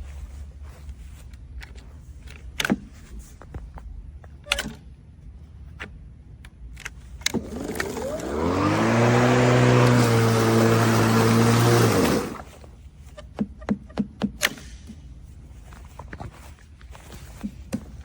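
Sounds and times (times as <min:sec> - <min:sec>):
electric motor whirring: 0:07.3 - 0:12.5.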